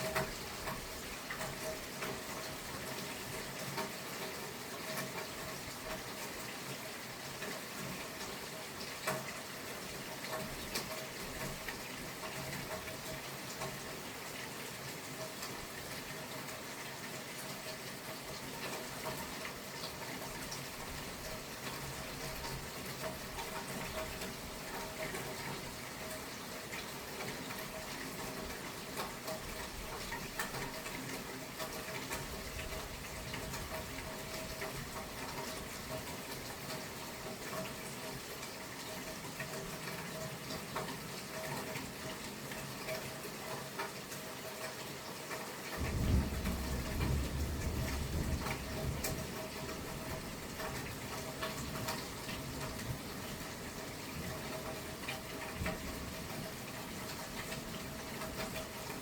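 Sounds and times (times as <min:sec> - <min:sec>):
steady rain falling: 0:00.0 - 0:59.0
low rumble of thunder: 0:45.8 - 0:53.1.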